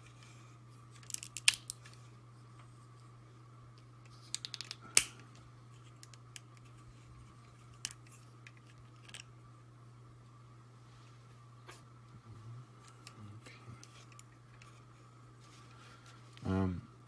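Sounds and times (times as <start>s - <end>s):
faint steady hum: 0.0s - 17.0s
plastic toy parts clicking: 4.3s - 5.1s.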